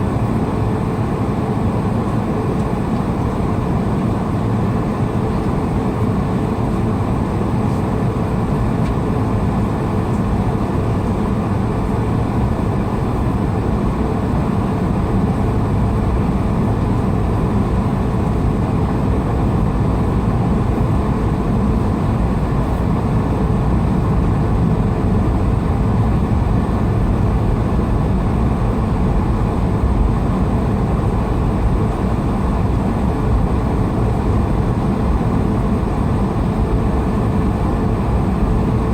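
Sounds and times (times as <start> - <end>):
airliner cabin engine rumble: 0.0 - 38.9.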